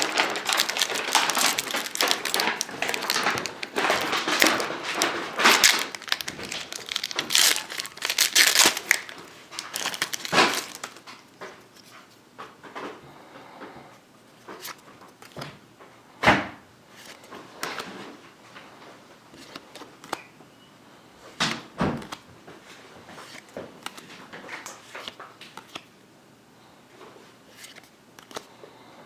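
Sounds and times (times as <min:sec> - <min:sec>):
rustling: 0:00.0 - 0:11.2
handling knocks and clatters: 0:00.0 - 0:11.6.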